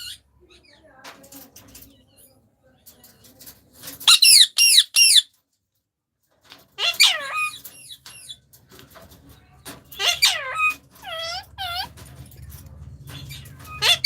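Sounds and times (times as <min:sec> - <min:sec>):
parrots squawking: 0:04.0 - 0:05.3, 0:06.8 - 0:08.4, 0:09.8 - 0:12.3, 0:13.0 - 0:14.0.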